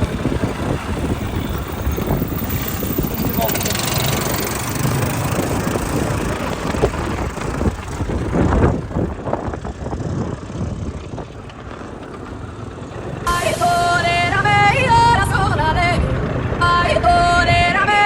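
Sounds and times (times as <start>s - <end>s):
motorcycle engine rumble: 0.0s - 18.0s
rushing wind: 0.0s - 18.0s
music with singing: 13.3s - 18.0s.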